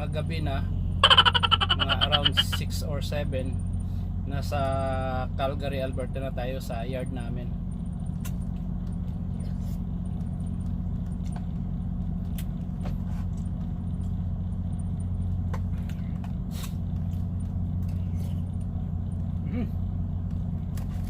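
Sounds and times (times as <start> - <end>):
diesel engine idling: 0.0 - 21.0.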